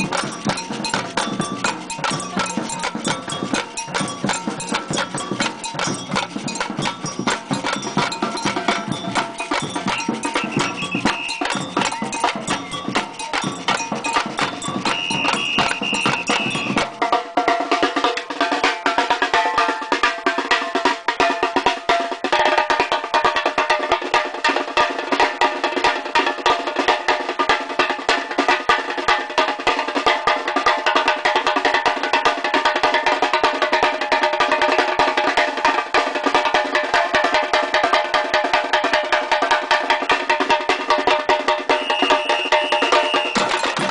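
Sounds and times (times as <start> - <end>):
samba percussion ensemble: 0.0 - 43.9.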